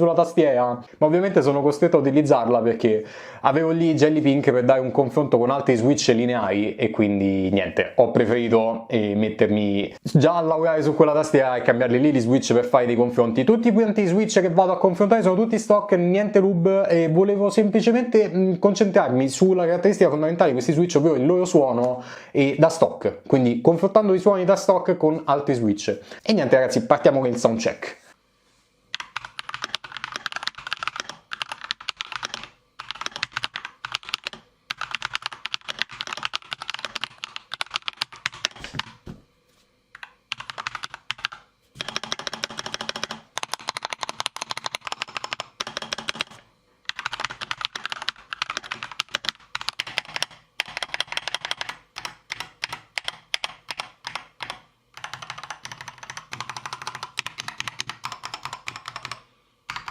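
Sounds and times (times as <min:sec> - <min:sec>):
fast typing on mechanical keyboard: 0:28.9 - 0:39.0, 0:40.0 - 0:59.9.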